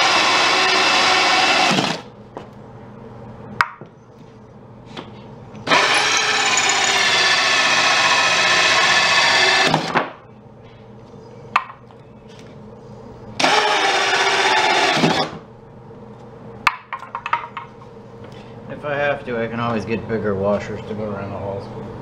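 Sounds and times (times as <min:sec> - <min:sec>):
electric drill boring wood: 0:00.0 - 0:02.1, 0:05.6 - 0:10.0, 0:13.4 - 0:15.4.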